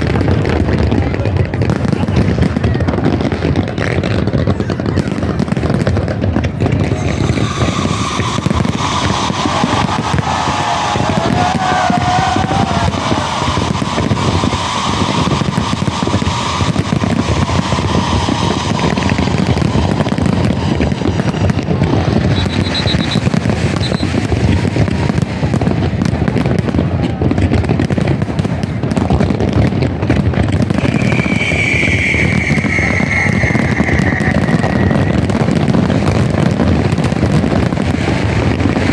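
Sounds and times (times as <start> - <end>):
fireworks crackling and popping: 0.0 - 38.9
steady whistling tone: 6.8 - 21.5, 22.2 - 24.2, 30.7 - 36.2.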